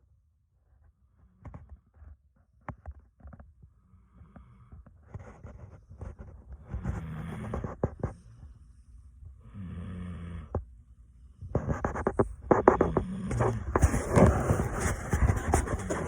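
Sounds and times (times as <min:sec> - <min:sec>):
dog snoring: 0:05.4 - 0:08.7, 0:09.4 - 0:10.7, 0:11.4 - 0:16.0.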